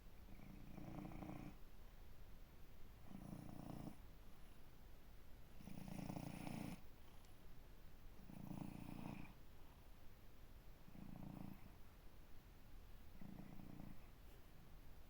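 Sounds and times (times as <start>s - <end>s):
cat snoring: 0.3s - 1.6s, 3.0s - 4.0s, 5.6s - 6.9s, 8.2s - 9.4s, 10.9s - 11.8s, 13.1s - 14.1s.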